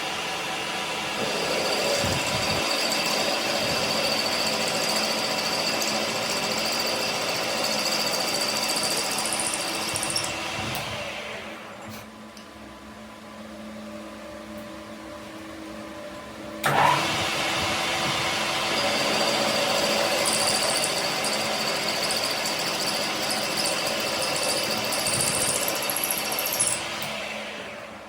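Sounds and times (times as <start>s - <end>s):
power tool cutting metal: 1.2s - 10.8s, 17.9s - 27.8s.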